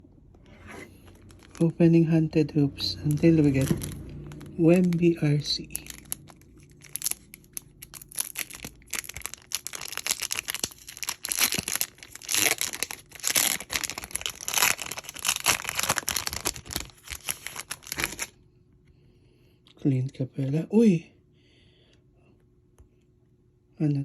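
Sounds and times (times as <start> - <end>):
card pack wrapper tearing and crinkling: 0.7 - 1.8, 2.8 - 18.4.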